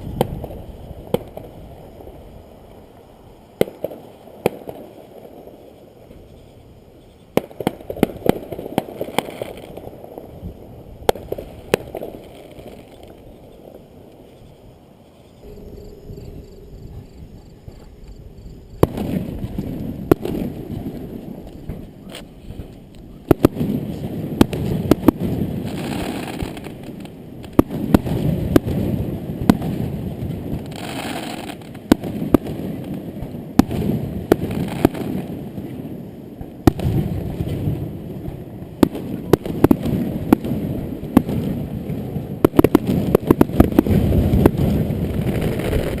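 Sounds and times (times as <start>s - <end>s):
fireworks bangs: 0.0s - 2.9s, 3.5s - 14.6s, 15.2s - 46.0s
fireworks rumble: 0.0s - 46.0s.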